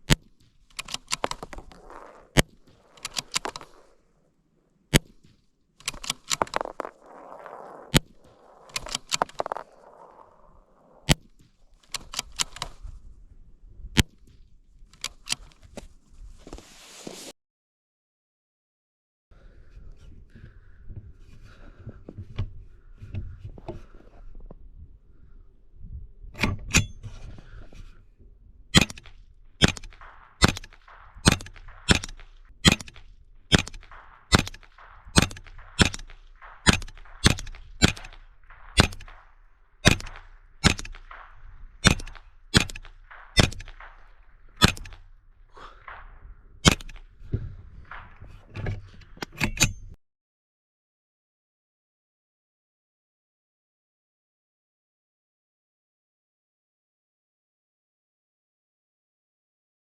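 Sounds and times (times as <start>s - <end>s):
rifle shots: 0.0s - 4.0s, 28.8s - 48.4s.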